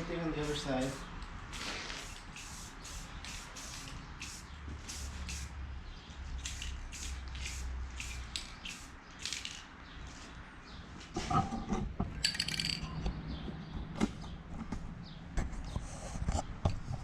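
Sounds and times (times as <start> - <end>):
spray paint can hissing: 0.3 - 5.6, 6.4 - 9.6.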